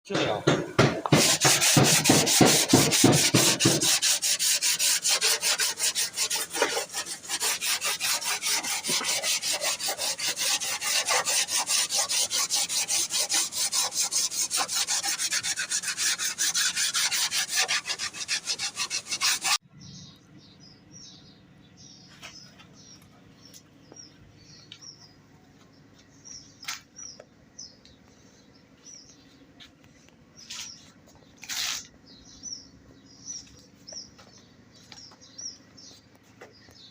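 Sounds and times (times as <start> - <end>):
hand sanding with abrasive paper: 1.1 - 19.6, 30.4 - 31.9.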